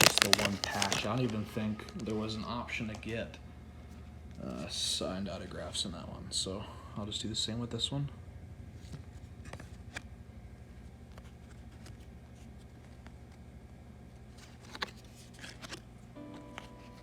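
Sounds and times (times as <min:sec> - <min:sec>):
trading cards rustling and clicking: 0:00.0 - 0:02.2, 0:10.8 - 0:13.4, 0:14.1 - 0:17.0
low steady hum: 0:00.0 - 0:17.0
background music: 0:16.2 - 0:17.0.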